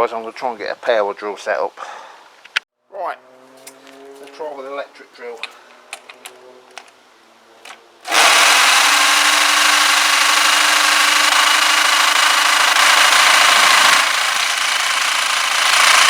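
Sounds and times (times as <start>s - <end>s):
electric drill spinning: 7.6s - 16.0s.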